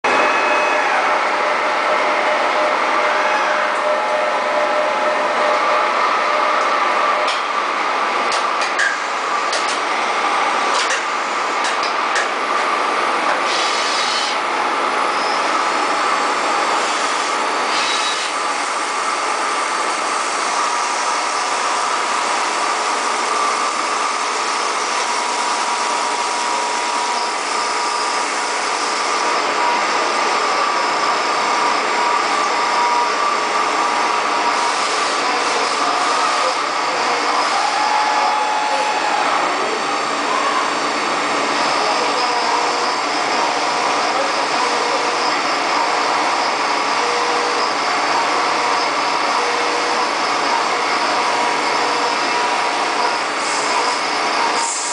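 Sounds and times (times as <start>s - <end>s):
milling machine spindle whine: 0.1s - 54.9s
metal cutting hiss: 16.8s - 18.4s.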